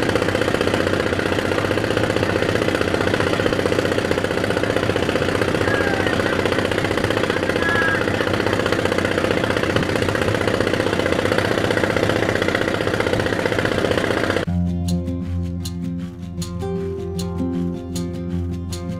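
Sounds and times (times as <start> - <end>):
diesel engine knocking: 0.0 - 14.5.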